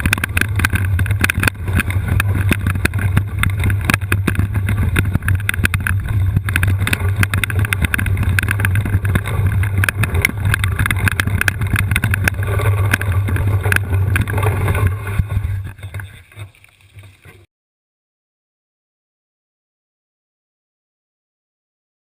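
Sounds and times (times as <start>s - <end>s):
rattling and knocking: 0.0s - 17.2s
wheelchair rolling over rough ground: 0.0s - 17.5s.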